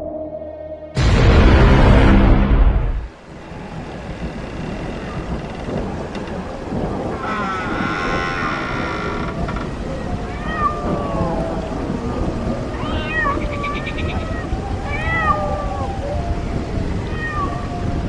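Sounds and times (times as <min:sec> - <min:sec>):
wavering high wail: 0:00.0 - 0:01.0
deep boom: 0:00.0 - 0:03.9
steady rushing noise: 0:00.9 - 0:10.4
cat meowing: 0:10.2 - 0:11.7, 0:12.7 - 0:15.9, 0:17.0 - 0:17.7.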